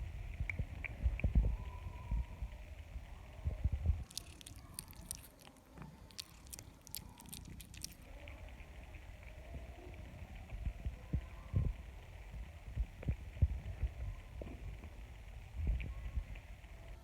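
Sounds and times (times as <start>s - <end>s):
cat chewing food: 4.0s - 9.4s.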